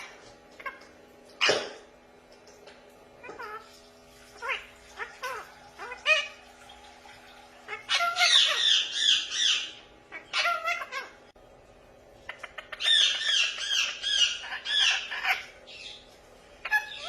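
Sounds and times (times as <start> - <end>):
parrot squawking: 0.0 - 1.8, 3.2 - 3.7, 4.3 - 6.5, 7.6 - 11.3, 12.3 - 16.0, 16.6 - 17.0.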